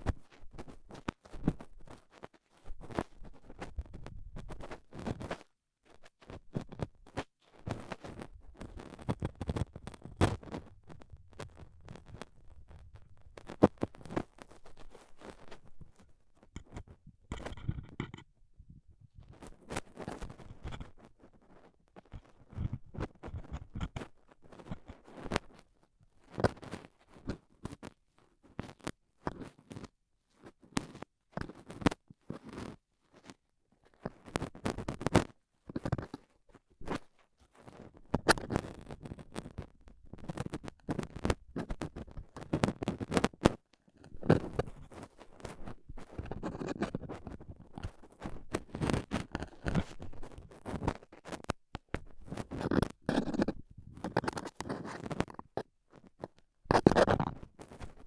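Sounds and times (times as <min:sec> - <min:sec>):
metal pick scratching in ear: 0:07.7 - 0:18.3, 0:19.2 - 0:25.6, 0:34.0 - 0:58.0.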